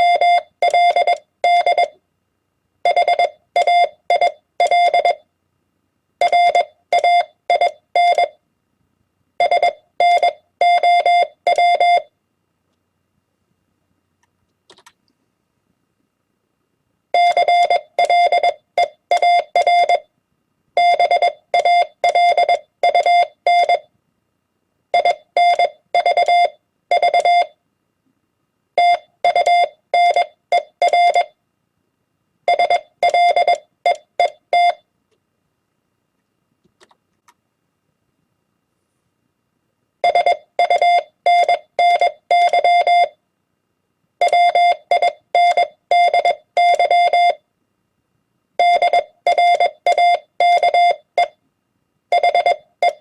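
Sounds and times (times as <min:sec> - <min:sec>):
morse code beeps: 0:00.0 - 0:02.0, 0:02.9 - 0:05.2, 0:06.2 - 0:08.4, 0:09.4 - 0:12.1, 0:17.2 - 0:20.1, 0:20.8 - 0:23.9, 0:25.0 - 0:27.6, 0:28.8 - 0:31.3, 0:32.5 - 0:34.8, 0:40.0 - 0:43.2, 0:44.2 - 0:47.4, 0:48.6 - 0:51.4, 0:52.2 - 0:53.0.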